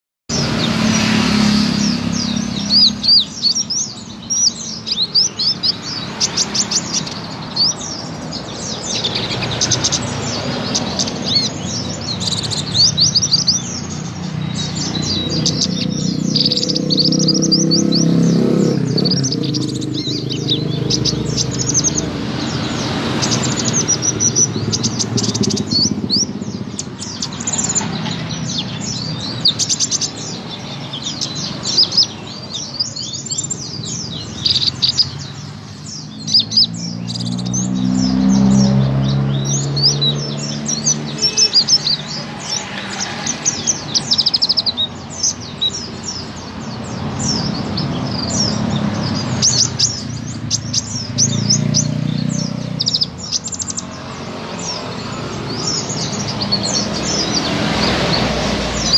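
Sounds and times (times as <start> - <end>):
bird chirping and trilling: 0.3 - 58.9.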